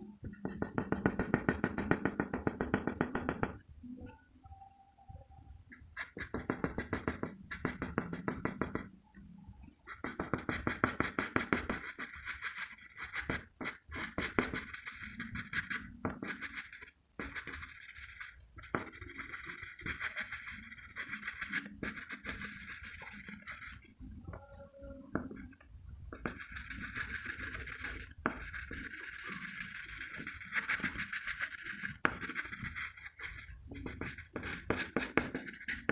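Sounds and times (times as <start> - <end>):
pencil shading on paper: 0.1 - 3.6, 5.7 - 9.2, 9.8 - 35.9.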